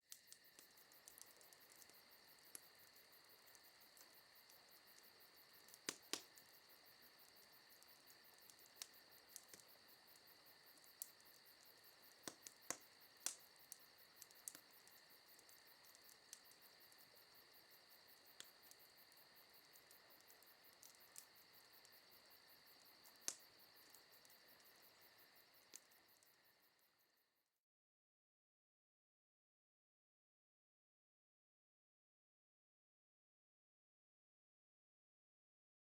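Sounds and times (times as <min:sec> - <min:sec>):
campfire crackling pops: 0:00.1 - 0:26.5
crickets chirring: 0:00.1 - 0:27.2.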